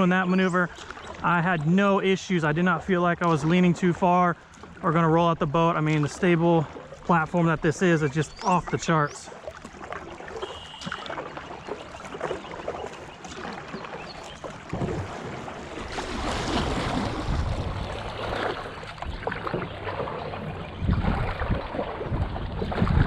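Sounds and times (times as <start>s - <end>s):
water dripping off paddle: 0.0s - 1.8s, 5.6s - 23.0s
hull moving through water: 0.0s - 23.0s
paddle splashing in water: 0.0s - 23.0s
wind buffeting microphone: 14.0s - 23.0s.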